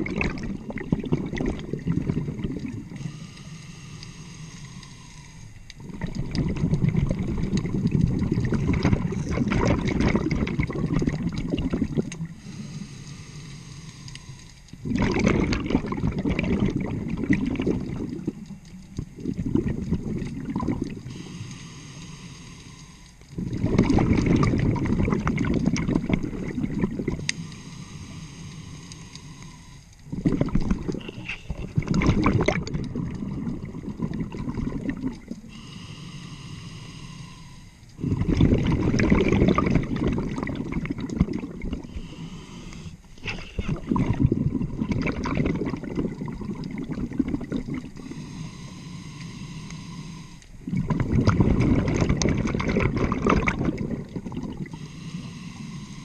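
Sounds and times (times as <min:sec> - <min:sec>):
exhaled bubbles gurgling: 0:00.0 - 0:56.0
inhaling through regulator: 0:02.8 - 0:06.0, 0:11.6 - 0:14.6, 0:26.2 - 0:31.9, 0:35.4 - 0:40.8, 0:41.4 - 0:44.8, 0:48.0 - 0:52.0, 0:53.5 - 0:56.0.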